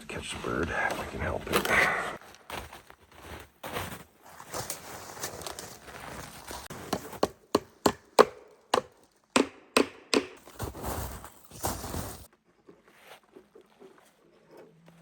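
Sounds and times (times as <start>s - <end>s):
wood chopping: 6.7s - 10.6s.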